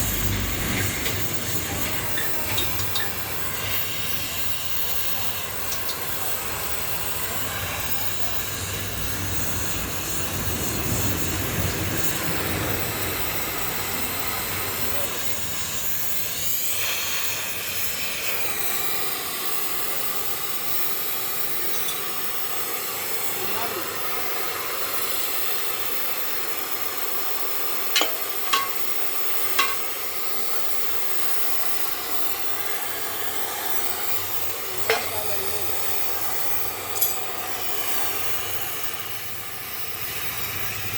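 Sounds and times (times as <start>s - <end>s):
welding torch flame hissing: 0.0s - 40.9s
sharp ringing metal taps: 28.0s - 29.0s, 29.6s - 29.9s.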